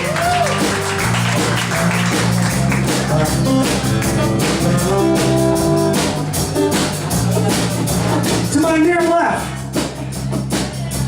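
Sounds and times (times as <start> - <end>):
electric guitar with bent notes: 0.0 - 8.6
bass line: 0.0 - 11.0
drums: 0.0 - 11.0.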